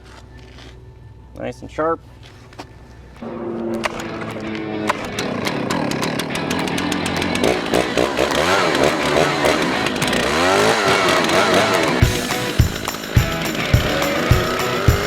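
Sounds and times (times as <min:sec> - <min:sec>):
chainsaw revving: 0:03.8 - 0:15.0
thumping music beat: 0:10.3 - 0:15.0.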